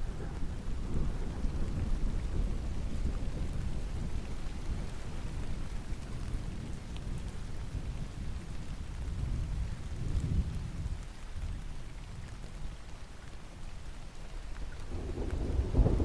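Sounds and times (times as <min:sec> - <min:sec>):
distant thunder rumbling: 0:00.0 - 0:05.3, 0:14.8 - 0:16.0
steady rain: 0:00.0 - 0:16.0.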